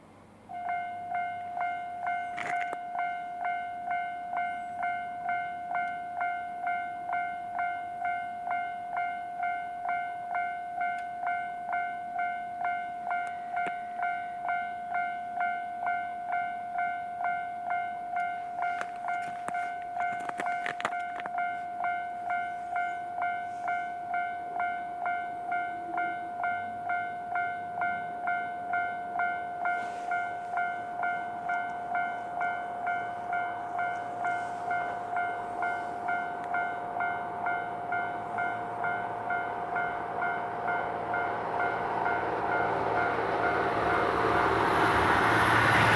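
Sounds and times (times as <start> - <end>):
level crossing warning bell ringing: 0.5 - 45.9.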